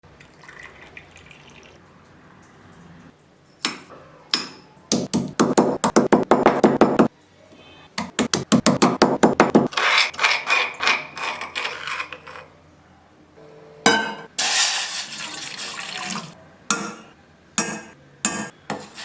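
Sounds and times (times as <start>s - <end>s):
kitchen tool knocking on hard surface: 4.9s - 7.1s, 8.1s - 9.7s.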